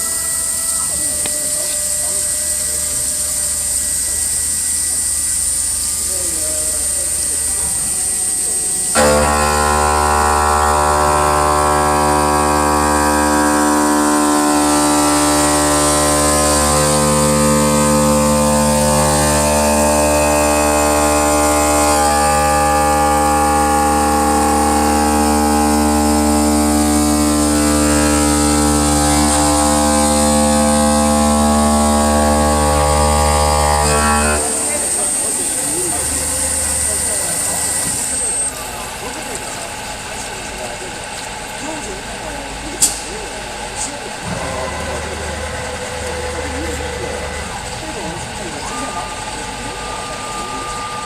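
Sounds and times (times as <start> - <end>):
stone cutting machine hum: 0.0 - 51.0.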